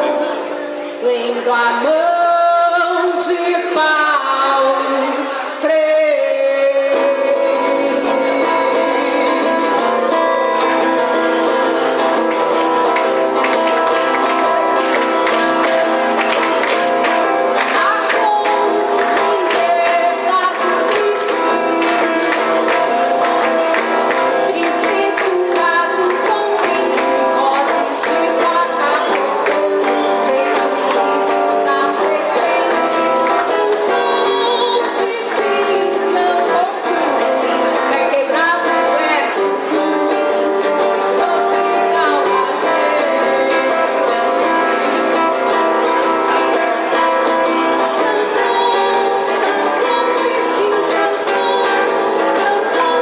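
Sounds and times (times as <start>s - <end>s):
woman singing: 0.0s - 53.0s.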